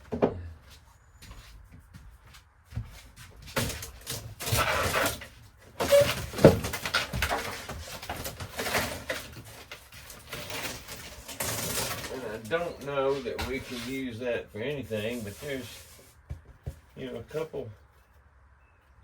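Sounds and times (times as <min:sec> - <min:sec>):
wood paneling cracking and scraping: 0:02.7 - 0:17.8.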